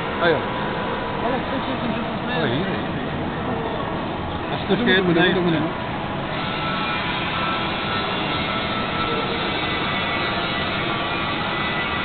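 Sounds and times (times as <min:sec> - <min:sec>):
faint whine: 0:00.0 - 0:12.0.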